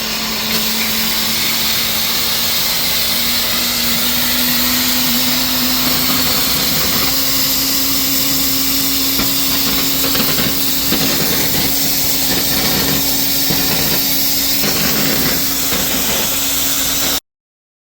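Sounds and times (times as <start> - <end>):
cutting torch hissing: 0.0 - 17.2
crackling from the cut: 4.9 - 17.2.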